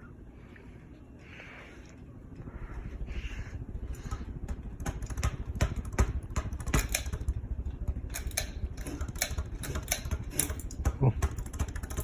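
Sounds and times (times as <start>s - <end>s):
ceiling fan draught on microphone: 0.0s - 12.0s
sharp clicks and knocks: 4.0s - 12.0s.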